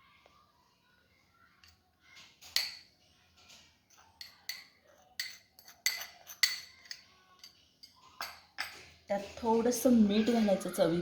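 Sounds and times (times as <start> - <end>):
metal spoon clinking on metal bowl: 2.4 - 2.9, 3.5 - 11.0.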